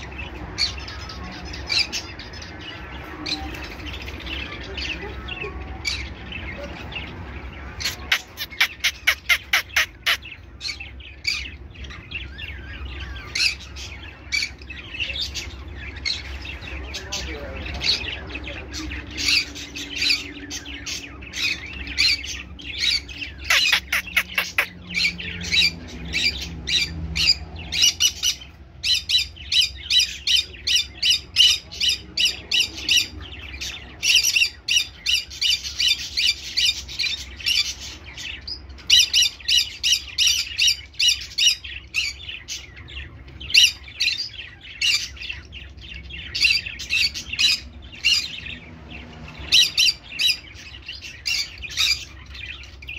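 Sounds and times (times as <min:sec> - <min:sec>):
parrot squawking: 0:07.6 - 0:11.5, 0:21.4 - 0:29.7.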